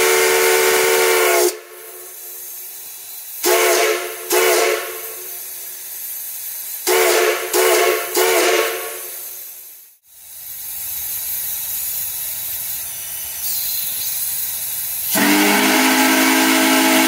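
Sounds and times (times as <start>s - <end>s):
steam whistle blasts: 0.0s - 2.4s, 3.4s - 5.5s, 6.8s - 9.4s, 15.1s - 17.0s
steam hissing: 0.0s - 17.0s.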